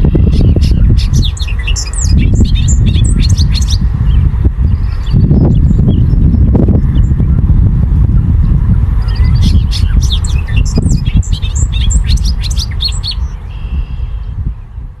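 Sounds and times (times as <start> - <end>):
bird singing bubbling song: 0.0 - 7.5, 8.1 - 14.8
loud low rumble: 2.1 - 12.1.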